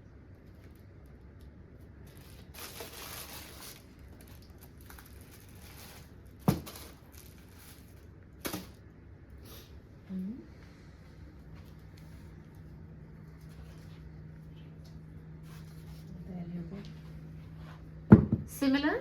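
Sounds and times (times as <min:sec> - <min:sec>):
packaging rustling and crinkling: 0:00.4 - 0:08.8.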